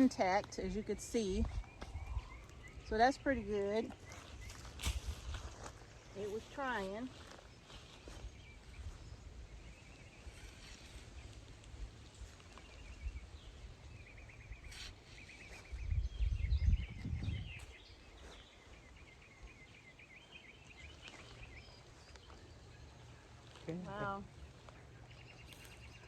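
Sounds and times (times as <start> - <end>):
bird chirping trills: 0.0 - 26.0.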